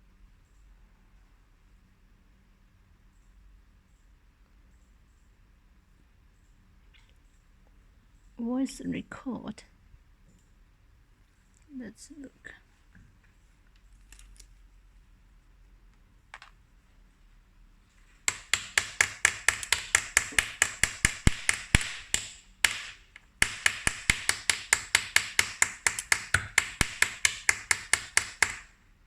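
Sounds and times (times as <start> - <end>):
rapid tapping on hard surface: 18.2 - 28.8.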